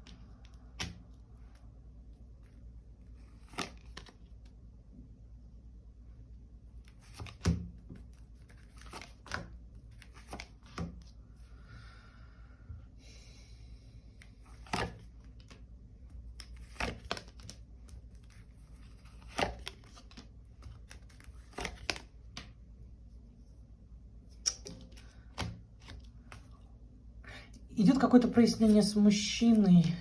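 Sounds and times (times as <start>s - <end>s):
cards snapping and tapping: 0.0s - 1.2s, 3.4s - 4.2s, 7.0s - 11.1s, 14.5s - 15.6s, 16.3s - 22.6s
cards rustling: 0.1s - 4.5s, 6.8s - 11.1s, 14.2s - 22.6s, 24.3s - 26.5s.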